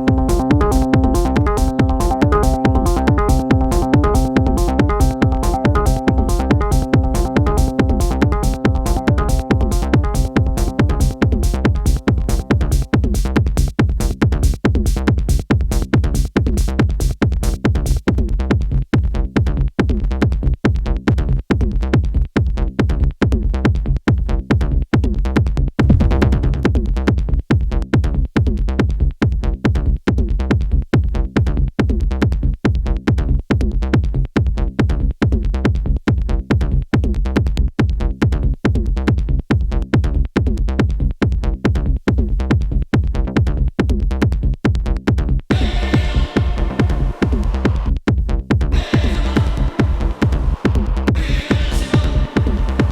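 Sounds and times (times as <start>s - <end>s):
techno electronic music: 0.0s - 13.7s, 45.5s - 47.9s, 48.7s - 52.9s.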